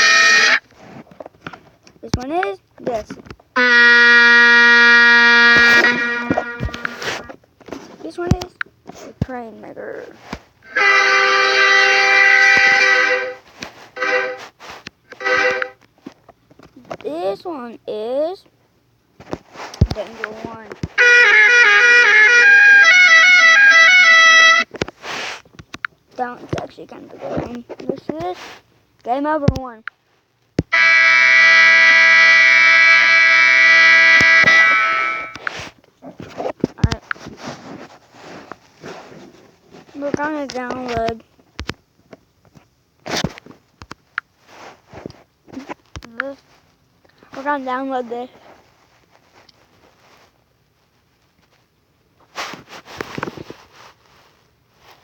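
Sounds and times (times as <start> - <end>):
train horn blasts: 0.0 - 0.6, 3.6 - 7.3, 10.6 - 15.8, 21.0 - 24.7, 30.7 - 35.6.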